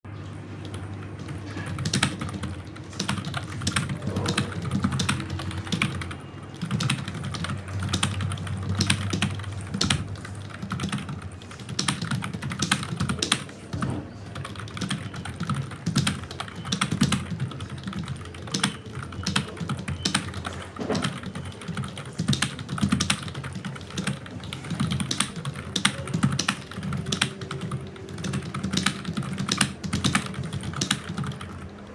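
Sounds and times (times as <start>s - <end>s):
fast keyboard typing: 0.2s - 31.9s.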